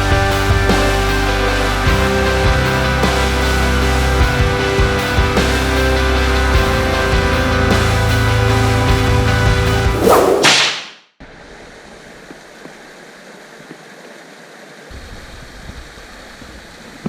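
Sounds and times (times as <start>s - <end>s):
rock music: 0.0s - 10.5s
whoosh sweep: 9.8s - 10.9s
steady outdoor hiss: 11.2s - 17.0s.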